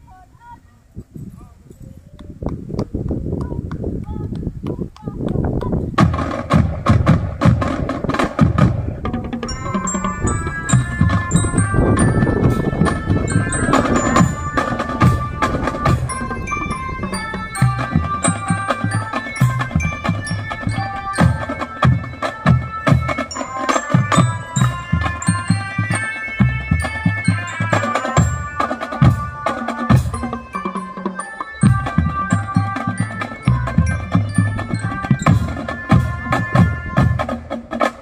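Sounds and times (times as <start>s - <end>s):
marching drum strokes: 5.9s - 38.0s
sustained melodic notes: 8.9s - 37.4s.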